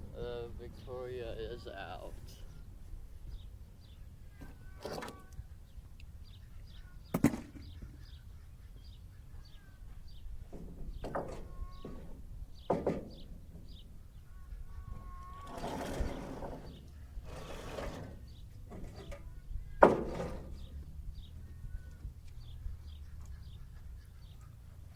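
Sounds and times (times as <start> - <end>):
songbirds chirping: 0.0 - 24.9
knocks: 10.5 - 13.8, 19.8 - 20.7.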